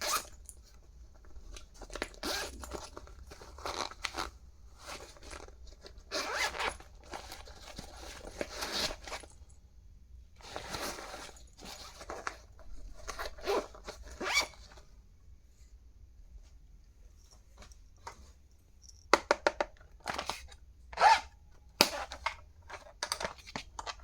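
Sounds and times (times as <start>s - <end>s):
zipper rasping: 2.2s - 2.8s, 6.1s - 6.8s, 13.2s - 14.6s, 21.0s - 21.3s.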